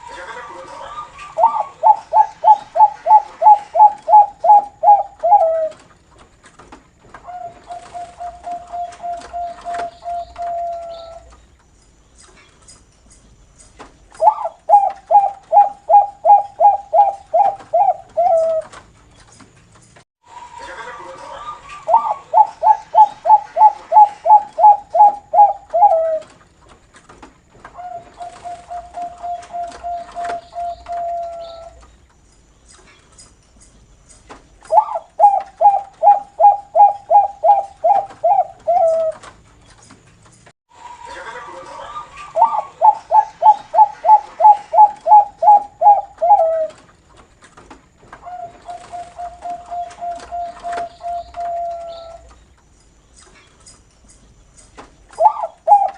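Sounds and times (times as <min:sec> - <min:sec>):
dove calling: 0:00.0 - 0:06.0, 0:07.0 - 0:11.6, 0:14.0 - 0:18.8, 0:20.3 - 0:26.4, 0:27.6 - 0:31.9, 0:34.5 - 0:39.4, 0:40.8 - 0:47.1, 0:48.1 - 0:52.4, 0:54.8 - 0:55.9.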